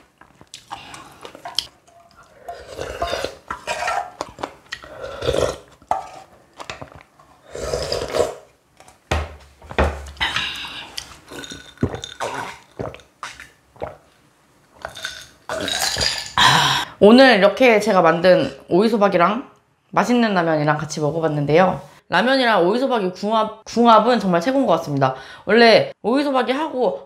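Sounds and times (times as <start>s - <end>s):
close-up eating sounds: 0.0s - 9.0s, 10.1s - 16.9s.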